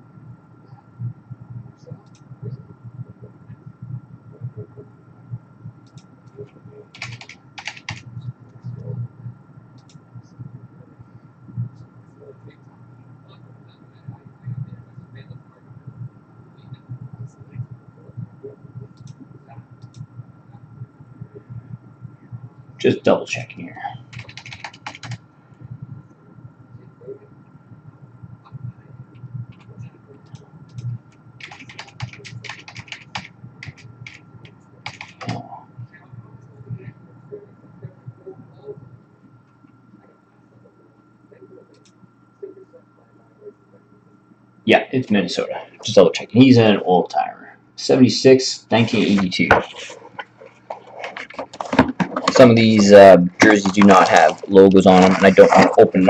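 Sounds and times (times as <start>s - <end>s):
computer keyboard typing: 5.8s - 8.1s, 24.1s - 25.2s, 29.5s - 34.2s, 34.8s - 35.5s.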